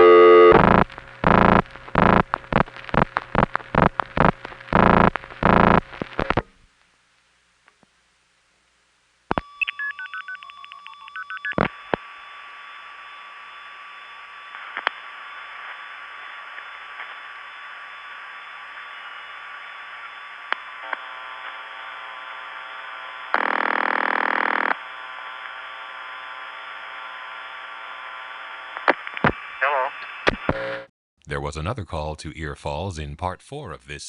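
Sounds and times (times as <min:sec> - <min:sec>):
constant line tone: 0:00.0 - 0:06.4, 0:09.3 - 0:29.9.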